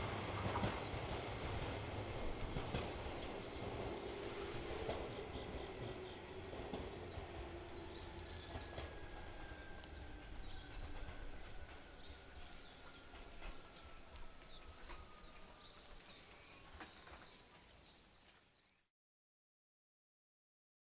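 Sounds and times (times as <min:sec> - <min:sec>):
bird chirps: 0:12.0 - 0:18.8.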